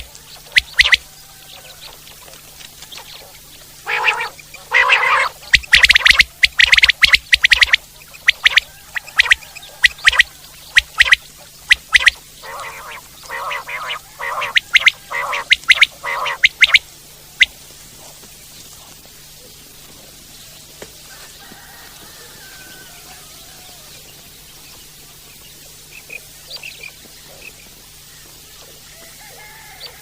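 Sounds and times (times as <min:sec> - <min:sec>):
quail calling: 0:00.0 - 0:17.6.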